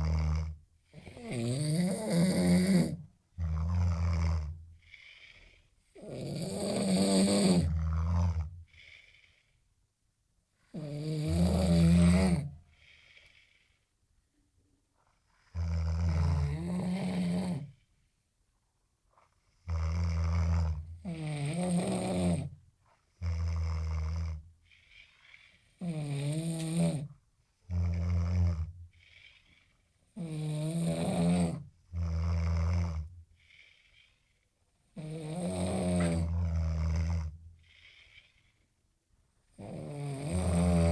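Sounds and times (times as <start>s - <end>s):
person snoring: 0.0s - 9.4s, 10.7s - 13.8s, 15.5s - 17.8s, 19.7s - 22.5s, 27.7s - 34.2s, 35.0s - 38.5s, 39.6s - 40.9s.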